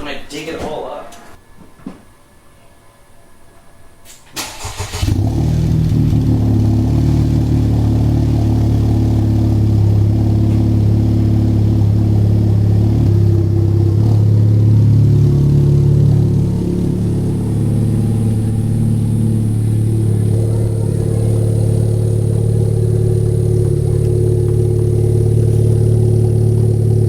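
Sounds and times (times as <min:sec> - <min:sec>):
car engine cranking and idling: 0:04.3 - 0:27.0.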